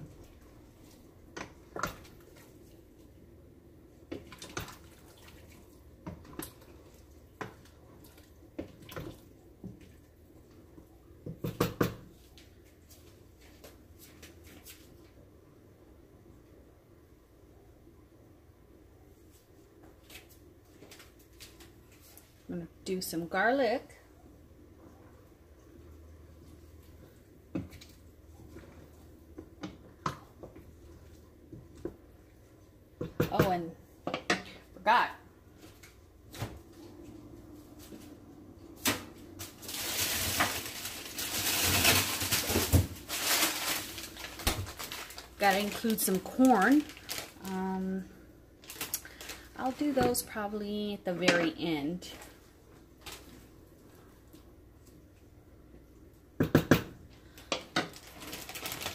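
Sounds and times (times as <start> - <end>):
cooking knocks and clatter: 11.2 - 12.1, 29.3 - 30.8, 33.0 - 34.6, 56.4 - 58.0.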